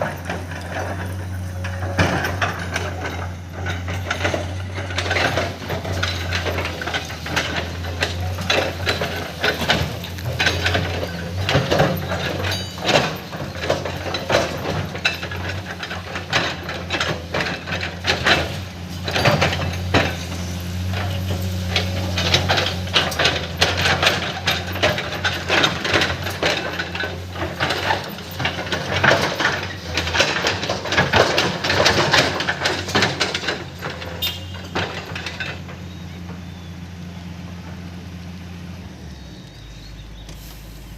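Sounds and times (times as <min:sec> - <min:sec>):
irregular clanks and knocks: 0:00.0 - 0:38.7
excavator diesel engine running: 0:00.0 - 0:40.9.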